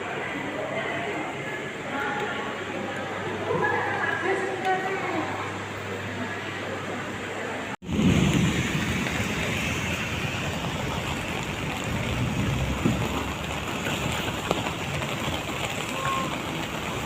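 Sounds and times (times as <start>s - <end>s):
heavy rain falling: 7.8s - 17.0s.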